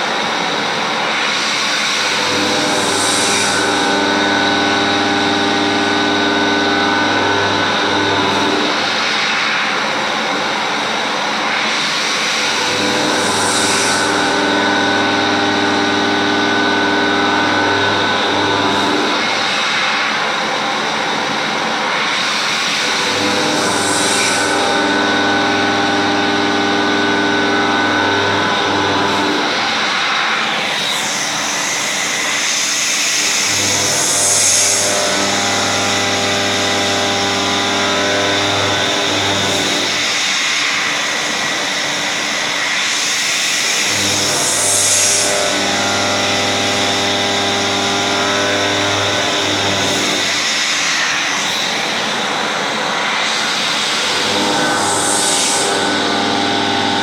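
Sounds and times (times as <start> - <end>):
milling machine whine: 0.0 - 57.0
cutting hiss: 1.2 - 9.6, 11.6 - 20.0, 22.0 - 57.0
steady machine tones: 22.8 - 32.2.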